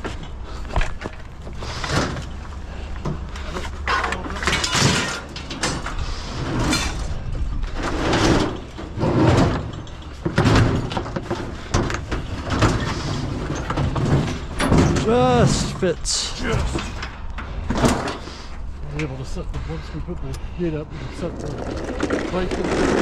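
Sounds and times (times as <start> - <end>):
metal scrap scraping and clunking: 3.4 - 18.7.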